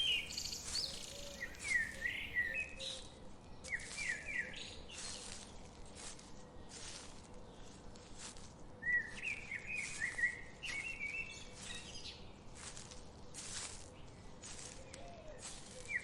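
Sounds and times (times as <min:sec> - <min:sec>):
forest ambience hiss: 0:00.0 - 0:02.6
songbird warbling: 0:00.0 - 0:02.6
rustling leaves: 0:00.0 - 0:16.0.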